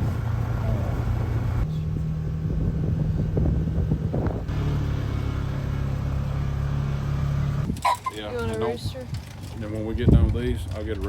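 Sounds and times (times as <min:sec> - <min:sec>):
wind noise: 0:00.0 - 0:04.6, 0:07.6 - 0:11.0
vehicle engine humming: 0:00.0 - 0:11.0.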